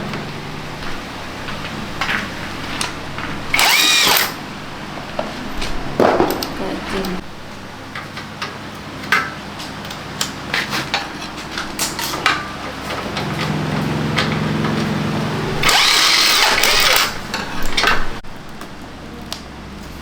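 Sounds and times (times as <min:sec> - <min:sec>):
small motor whirring: 0:03.5 - 0:04.4, 0:15.4 - 0:17.2.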